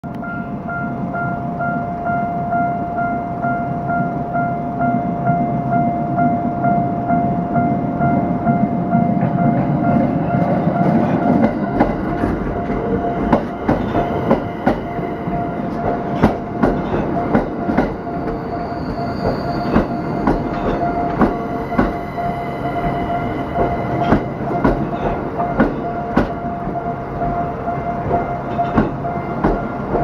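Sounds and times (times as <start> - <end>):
crossing warning bell ringing: 0.0 - 30.0
train wheels clacking over joints: 9.2 - 30.0.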